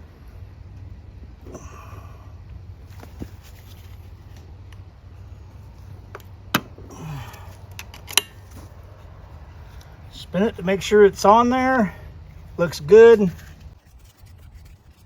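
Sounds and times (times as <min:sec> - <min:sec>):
metal parts clicking and clanking: 0:07.2 - 0:08.7.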